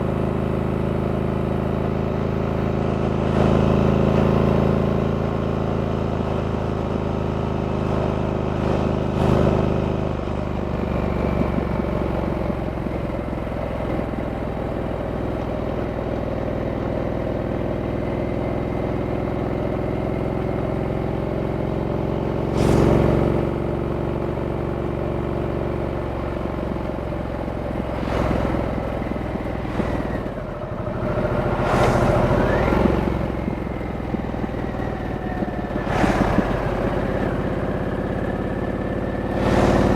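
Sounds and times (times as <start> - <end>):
motorcycle engine running: 0.0 - 39.9
loud rushing noise: 22.5 - 23.7, 27.8 - 39.9.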